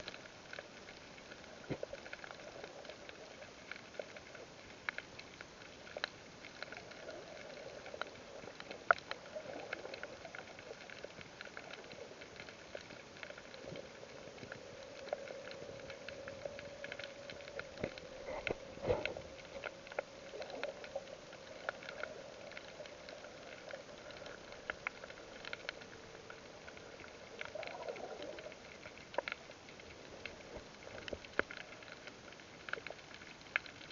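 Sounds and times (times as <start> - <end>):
steady underwater hiss: 0.0 - 33.9
underwater clicks and pops: 14.4 - 25.8.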